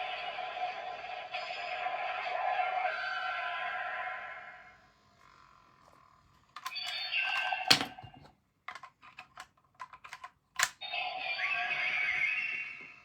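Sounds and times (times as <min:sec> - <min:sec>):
plastic toy parts clicking: 0:05.9 - 0:10.8
toy electronic sound effects: 0:06.6 - 0:07.8, 0:10.6 - 0:13.0.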